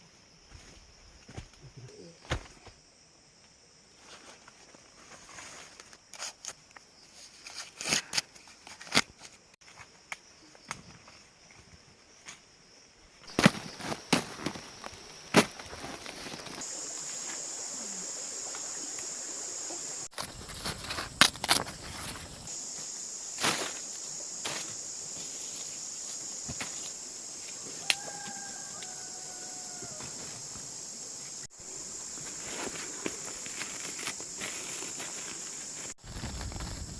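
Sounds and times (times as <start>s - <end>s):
sharp knocks and cracks: 13.3s - 14.6s.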